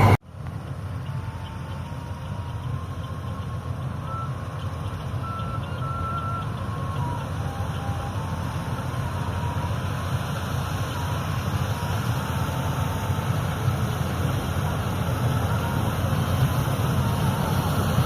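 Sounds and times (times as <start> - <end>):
tractor diesel engine running: 0.0 - 18.0.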